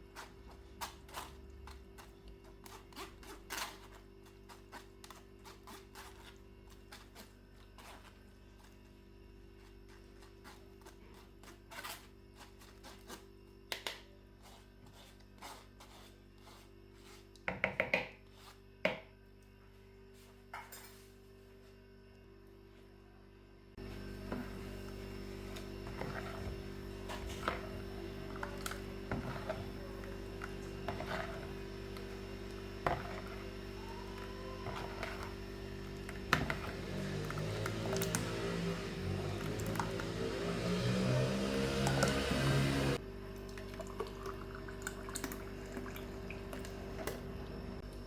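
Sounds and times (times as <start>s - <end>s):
faint steady hum: 43.0s - 48.0s.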